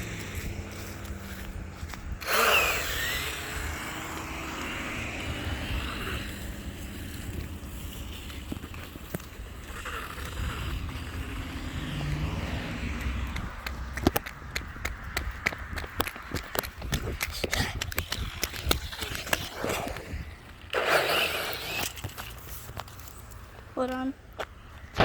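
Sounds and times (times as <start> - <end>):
electric rc car motor whining: 2.2 - 13.0, 17.9 - 23.1.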